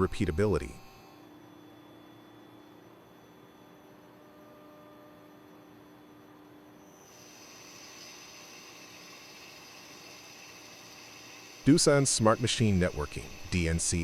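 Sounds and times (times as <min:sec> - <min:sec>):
faint machine hum: 0:00.0 - 0:14.0
hiss with high whine: 0:07.0 - 0:14.0
steady tones: 0:09.6 - 0:14.0.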